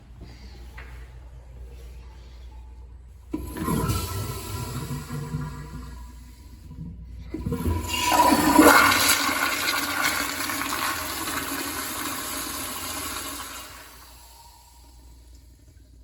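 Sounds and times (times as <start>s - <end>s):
toilet flushing: 3.3s - 16.0s.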